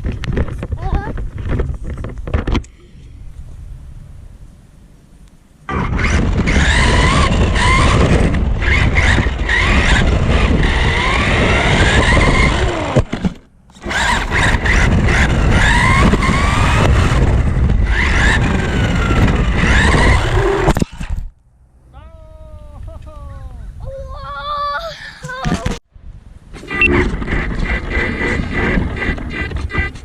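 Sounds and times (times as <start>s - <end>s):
rumble of wheels and wind: 0.0s - 30.0s
electric motor whining: 5.7s - 21.2s.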